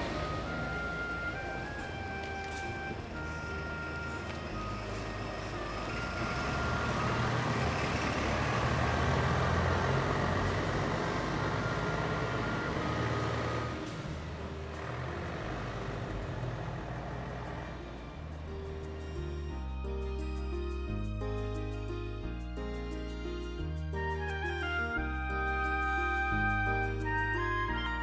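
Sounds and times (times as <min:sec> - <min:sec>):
vehicle passing by: 0:00.0 - 0:18.4.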